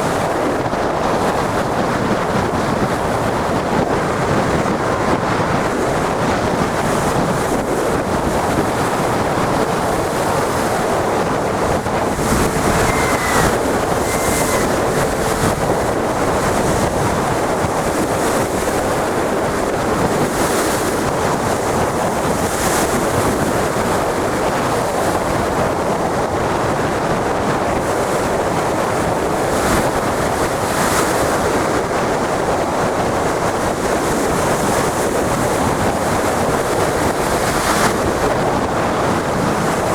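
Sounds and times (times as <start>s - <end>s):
sea waves breaking: 0.0s - 9.2s, 9.8s - 19.0s
wind buffeting microphone: 0.0s - 26.4s.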